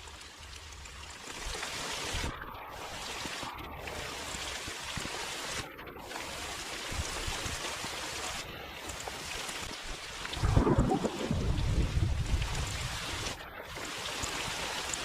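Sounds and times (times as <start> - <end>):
rain hissing: 6.2 - 15.0
wind buffeting microphone: 10.3 - 13.4.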